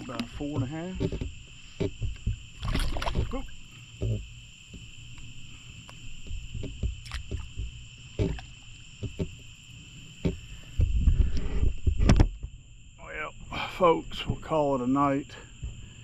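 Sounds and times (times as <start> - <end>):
knocks and rustles in a boat: 0.0 - 12.6, 14.2 - 14.6, 15.6 - 15.9
night insects chorus: 0.0 - 16.0.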